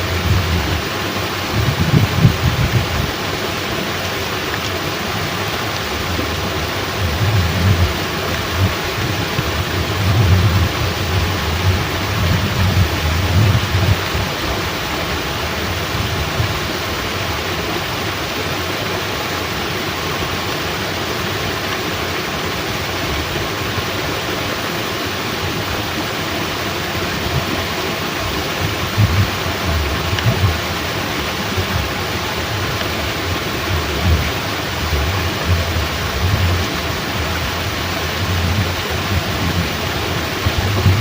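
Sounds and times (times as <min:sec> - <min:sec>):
low rumbling: 0:00.0 - 0:03.4, 0:05.7 - 0:17.4, 0:27.0 - 0:41.0
heavy rain: 0:00.0 - 0:41.0
water rushing through sluice gate: 0:00.0 - 0:41.0.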